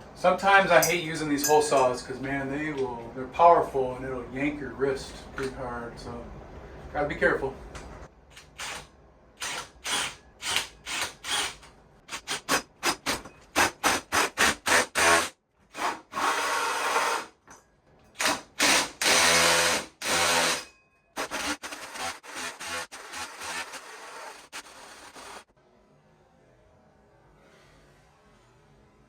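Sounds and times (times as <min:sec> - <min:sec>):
power drill with hole saw cutting: 0:09.4 - 0:12.6, 0:13.6 - 0:17.3, 0:18.2 - 0:25.5.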